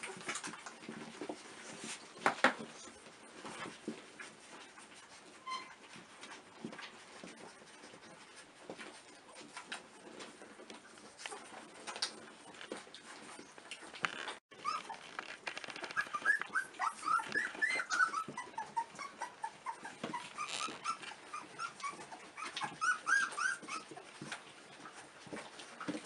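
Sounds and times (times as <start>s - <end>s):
soft rustling and scrabbling: 0.0s - 26.0s
puppies squeaking and whimpering: 9.3s - 24.9s.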